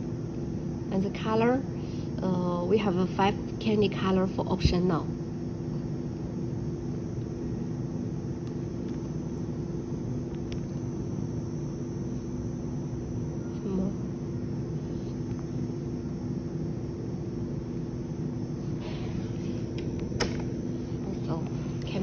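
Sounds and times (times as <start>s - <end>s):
low hum: 4.4s - 22.0s.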